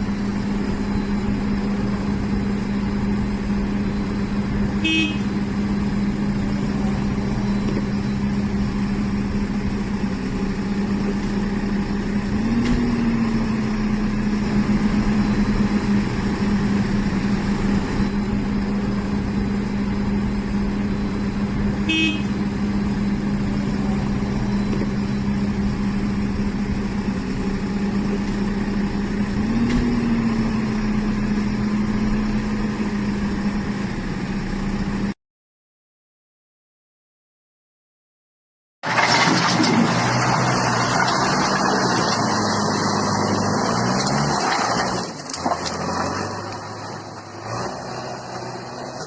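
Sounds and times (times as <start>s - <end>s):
diesel engine running: 0.0s - 35.2s, 38.8s - 49.0s
short beep: 2.7s - 9.3s, 17.8s - 25.6s.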